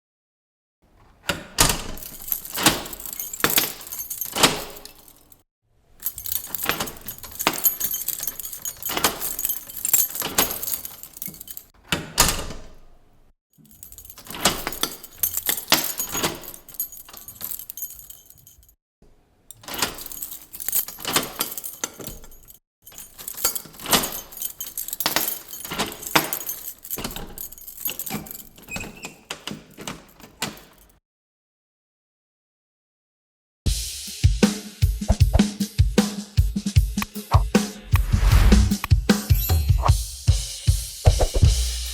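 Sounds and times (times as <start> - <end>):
key turning in door lock: 1.3 - 5.4, 6.0 - 12.9, 13.6 - 18.8, 19.5 - 31.0
keys jangling: 1.6 - 5.4, 6.0 - 12.4, 13.6 - 18.8, 19.5 - 31.0, 37.2 - 37.4, 38.0 - 40.0.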